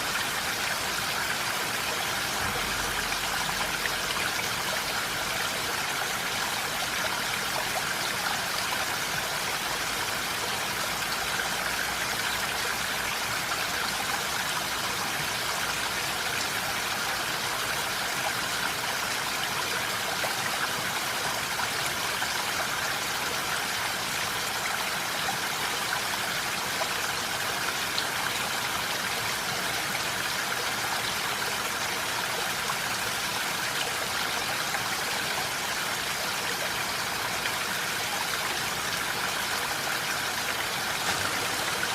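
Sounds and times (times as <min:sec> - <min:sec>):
steady rain falling: 0:00.0 - 0:41.9.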